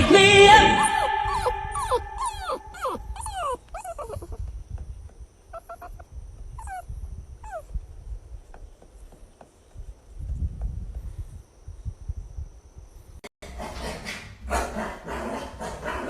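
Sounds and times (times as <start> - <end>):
dog whining: 0.5 - 4.5, 5.5 - 7.8.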